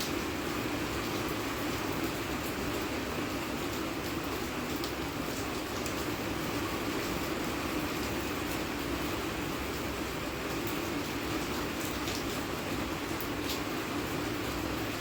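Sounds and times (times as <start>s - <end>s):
steady rain falling: 0.0s - 15.0s
rain drop ticks: 3.7s - 6.1s, 10.5s - 14.3s.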